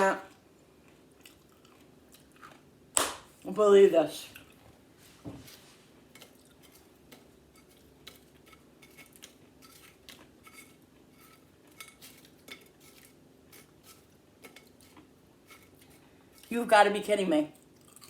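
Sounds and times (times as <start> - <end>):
crunchy chips clicking and clinking: 6.1 - 16.6, 17.6 - 18.0.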